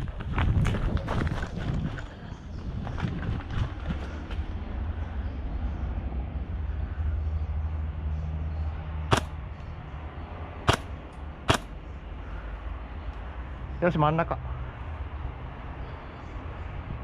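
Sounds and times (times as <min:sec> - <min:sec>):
steady low rumble: 0:00.0 - 0:13.9
airsoft gun shot: 0:09.1 - 0:09.4, 0:10.7 - 0:10.9, 0:11.5 - 0:11.7.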